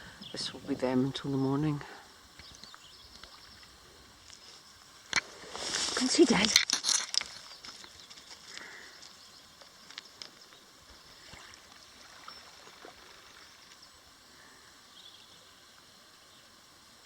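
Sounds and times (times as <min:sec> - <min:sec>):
gentle water at beach: 0:02.0 - 0:05.3, 0:10.2 - 0:14.4.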